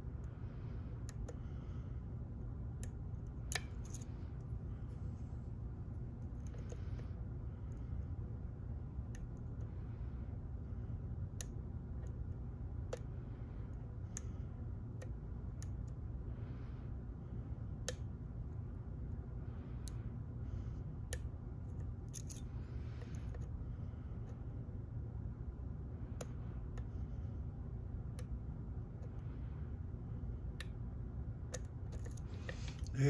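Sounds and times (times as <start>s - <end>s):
steady low hum: 0.0s - 33.0s
lock pick metallic clicks: 3.5s - 4.1s, 22.1s - 22.5s.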